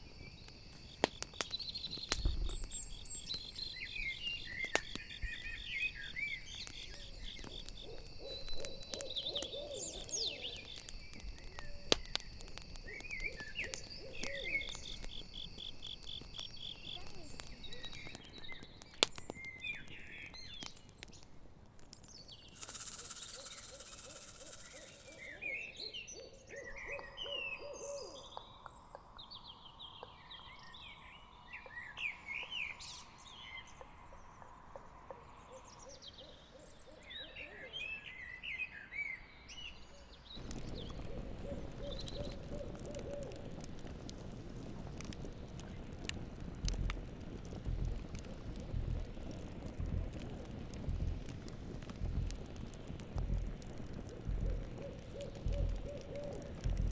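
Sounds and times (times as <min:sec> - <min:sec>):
crickets trilling: 0:00.0 - 0:20.8, 0:22.4 - 0:25.7, 0:40.3 - 0:56.9
campfire crackling: 0:00.0 - 0:27.0, 0:39.7 - 0:56.9
small birds chirping: 0:00.0 - 0:56.9
owl hooting: 0:07.0 - 0:10.7, 0:12.8 - 0:15.0, 0:22.6 - 0:28.4, 0:40.4 - 0:43.5, 0:54.3 - 0:56.9
loud hiss: 0:22.6 - 0:25.4.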